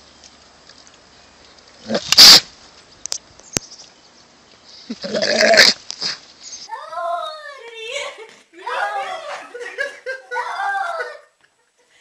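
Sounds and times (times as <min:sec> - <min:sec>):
animal harsh hoarse calls: 0:01.8 - 0:02.5, 0:04.9 - 0:06.2.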